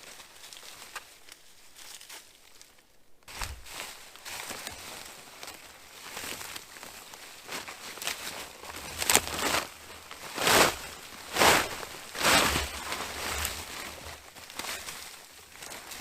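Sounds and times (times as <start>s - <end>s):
dull thump: 3.3s - 3.8s
plastic tarp crinkling and tearing: 3.3s - 16.0s.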